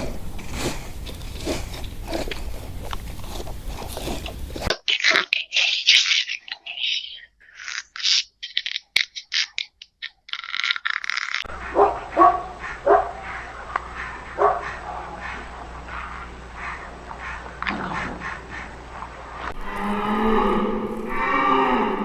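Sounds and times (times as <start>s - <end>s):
crisp crunching noises: 0.0s - 6.4s, 19.5s - 22.0s
dog barking: 11.5s - 19.1s.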